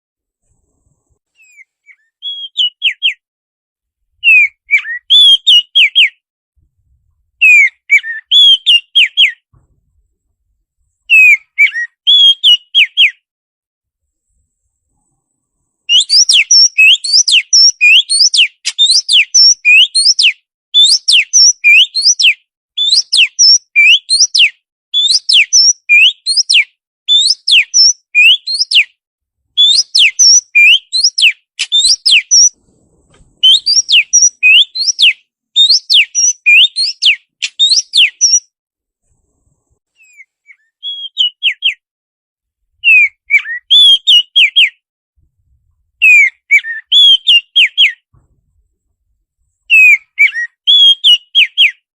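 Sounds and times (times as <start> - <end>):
songbird whistling song: 1.3 - 3.2, 4.2 - 6.2, 7.4 - 9.8, 11.0 - 13.2, 15.8 - 29.0, 29.6 - 38.5, 39.9 - 41.8, 42.8 - 44.8, 46.0 - 48.3, 49.6 - 51.8.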